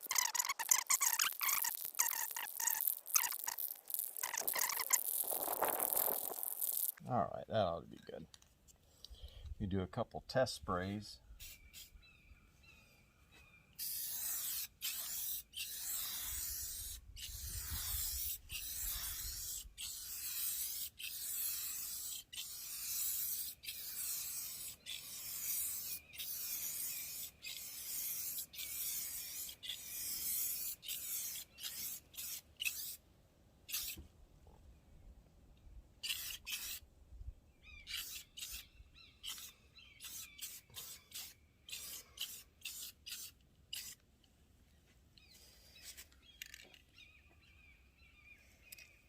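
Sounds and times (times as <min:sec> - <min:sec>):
aerosol can spraying hiss: 0:13.8 - 0:33.0.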